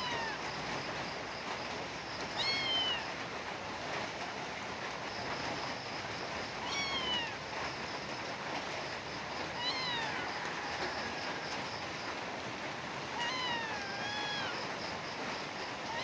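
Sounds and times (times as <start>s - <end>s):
kitten meowing: 0.0s - 0.4s, 2.4s - 3.1s, 6.6s - 7.4s, 9.6s - 10.3s, 13.1s - 14.6s
steady background hiss: 0.0s - 16.0s.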